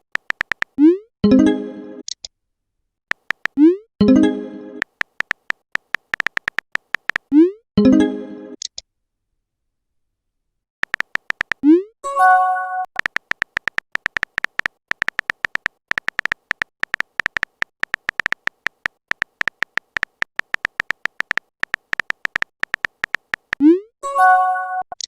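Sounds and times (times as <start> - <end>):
electronic typing beeps: 0.0 - 1.0, 3.1 - 4.2, 4.8 - 7.5, 10.8 - 11.9, 12.6 - 25.0.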